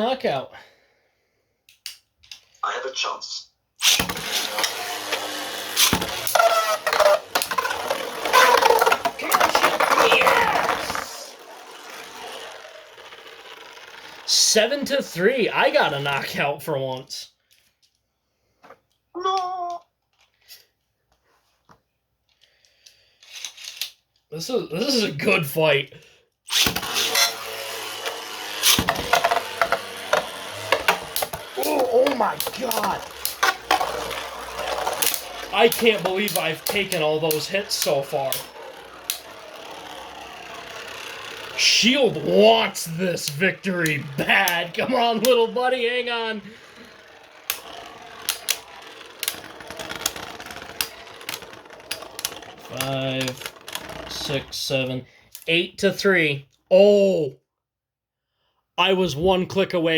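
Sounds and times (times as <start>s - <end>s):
spinning tops clashing: 3.8s - 14.3s, 26.5s - 54.3s
spinning tops grinding in plastic stadium: 3.8s - 16.4s, 26.5s - 55.0s.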